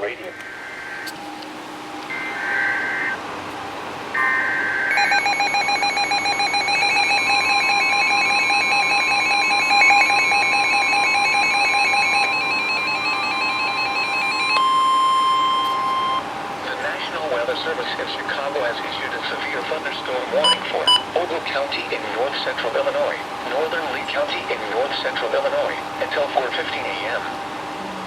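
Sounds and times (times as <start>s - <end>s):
radio alarms beeping rapidly: 4.2s - 16.2s, 20.3s - 21.2s
steady alert tone: 4.3s - 16.2s.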